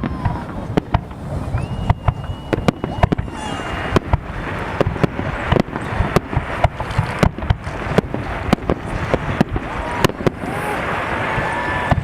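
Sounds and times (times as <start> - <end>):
firework bangs: 0.0 - 12.0
fireworks crackling: 0.0 - 12.0.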